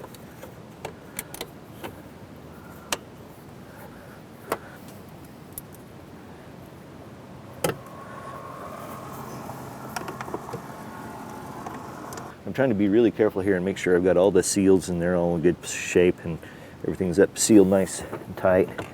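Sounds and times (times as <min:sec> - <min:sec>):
steady background hum: 0:00.0 - 0:13.7.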